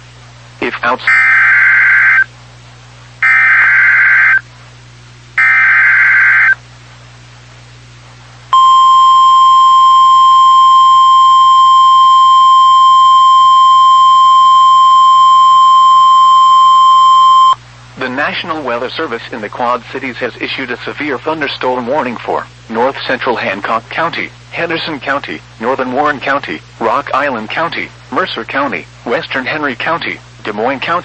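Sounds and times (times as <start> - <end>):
digital data tone bursts: 5.4 - 6.6.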